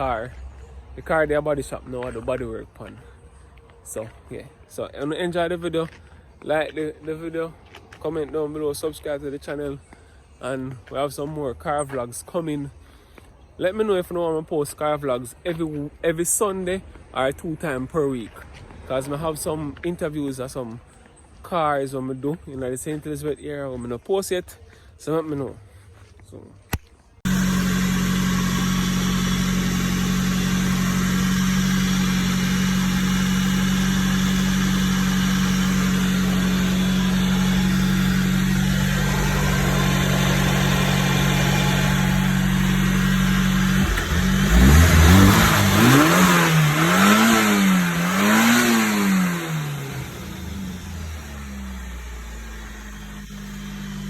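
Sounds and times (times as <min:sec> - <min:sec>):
car engine idling and revving: 0:00.0 - 0:04.2, 0:27.2 - 0:54.0.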